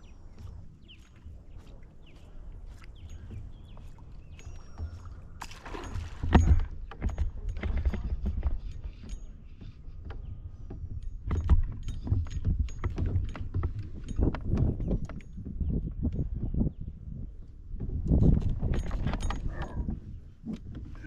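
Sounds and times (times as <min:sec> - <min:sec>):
knocks and clicks of gear: 0:05.6 - 0:16.3, 0:17.8 - 0:21.0
clatter of gear: 0:05.7 - 0:15.5, 0:18.0 - 0:21.0.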